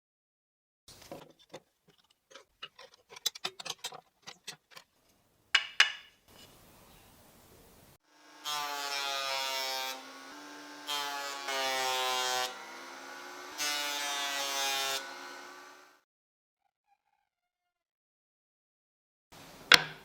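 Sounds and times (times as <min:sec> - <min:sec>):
power tool motor whining: 0:08.1 - 0:16.0.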